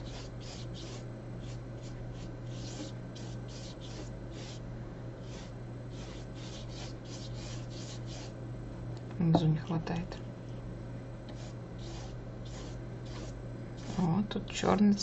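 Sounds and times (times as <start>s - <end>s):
paintbrush strokes on paper: 0.0s - 4.6s, 5.2s - 8.3s, 11.3s - 14.1s
steady low hum: 0.0s - 15.0s.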